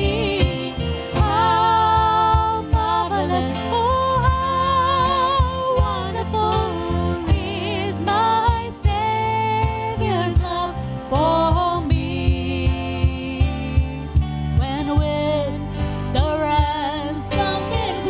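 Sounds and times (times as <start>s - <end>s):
steady drum beat: 0.0s - 15.5s
worship band music: 0.0s - 18.0s.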